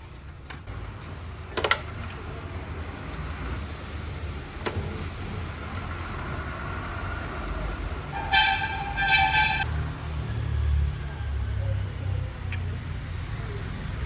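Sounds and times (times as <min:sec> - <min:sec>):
vehicle horn blasts: 0:08.1 - 0:09.7.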